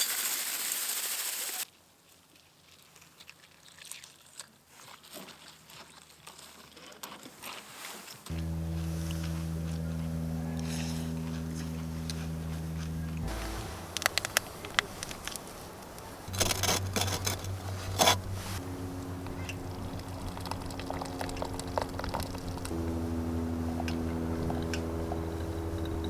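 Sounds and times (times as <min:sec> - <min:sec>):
soft sustained chords: 0:08.3 - 0:26.0.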